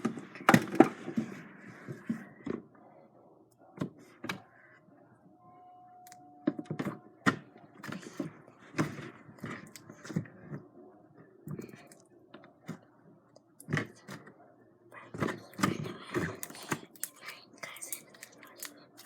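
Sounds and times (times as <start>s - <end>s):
slime squelching: 15.2s - 19.0s.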